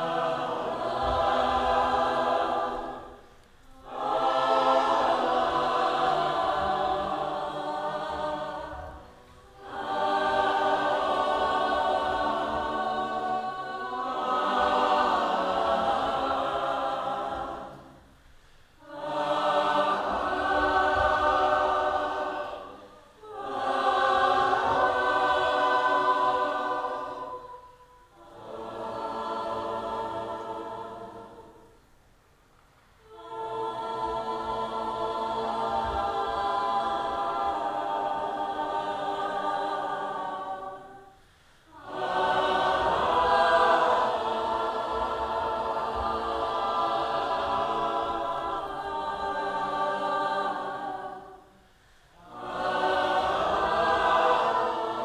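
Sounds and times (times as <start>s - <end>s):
group of voices singing: 0.0s - 31.9s, 33.0s - 55.0s.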